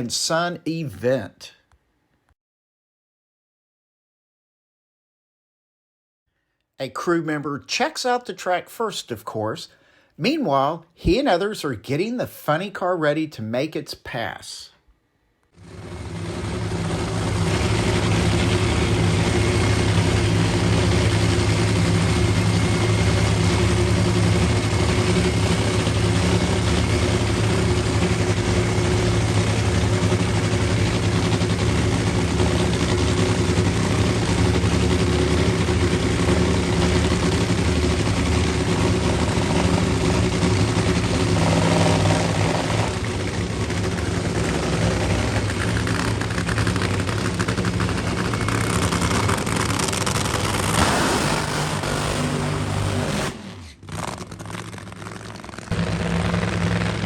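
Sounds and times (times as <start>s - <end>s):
race car engine idling: 15.6s - 57.0s.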